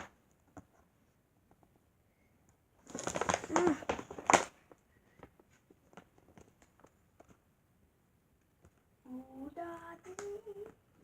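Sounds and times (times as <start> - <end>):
mailing bag crinkling: 2.8 - 4.6.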